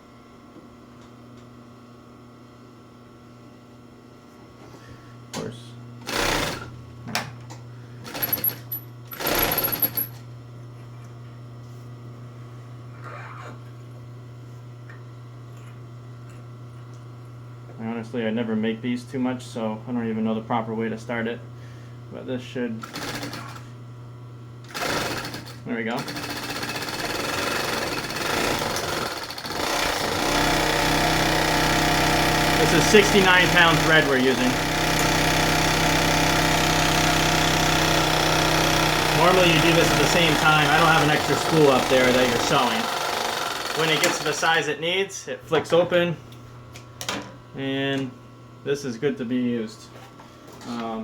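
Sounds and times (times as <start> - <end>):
sewing machine motor humming: 6.0 - 6.7, 8.0 - 10.1, 22.8 - 23.7, 24.6 - 44.6
bobbin winder high whine: 37.5 - 44.6.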